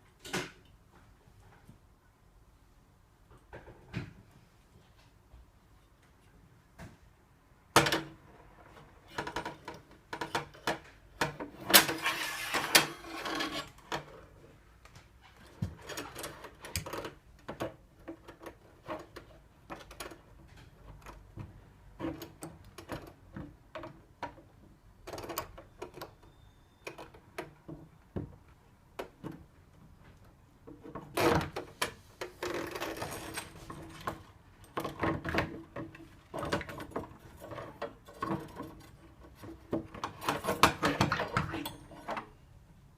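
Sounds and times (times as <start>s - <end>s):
metal tool scraping in letterbox: 11.7s - 13.8s.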